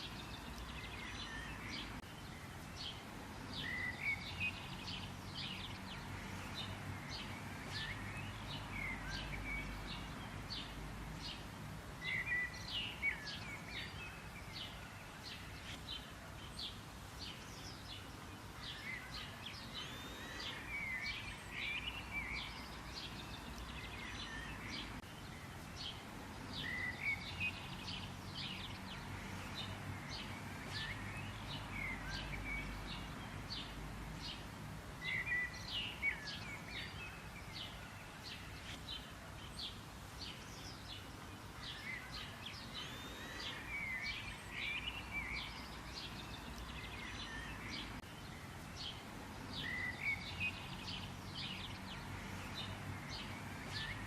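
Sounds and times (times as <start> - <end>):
birds chirping: 0.0 - 54.0.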